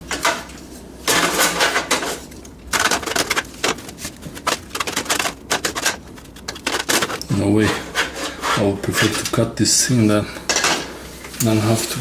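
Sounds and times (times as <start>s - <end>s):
sheet metal scraping and clattering: 0.1s - 9.4s.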